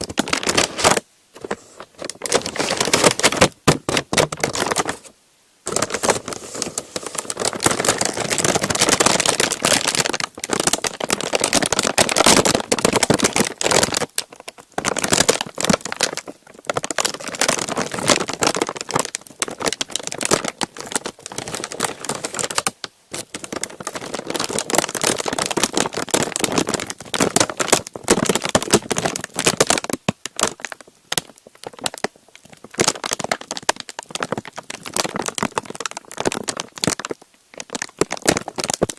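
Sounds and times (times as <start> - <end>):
crinkly sheet crumpling: 0.0 - 38.9.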